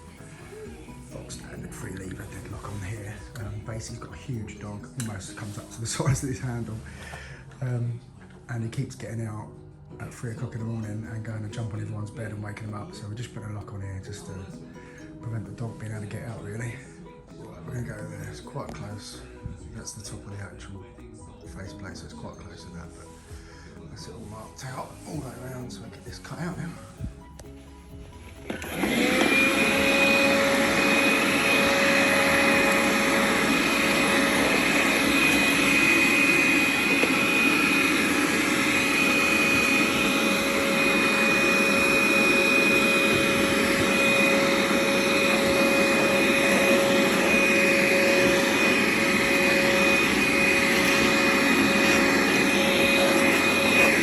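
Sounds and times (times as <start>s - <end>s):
power tool cutting wood: 27.9s - 54.0s.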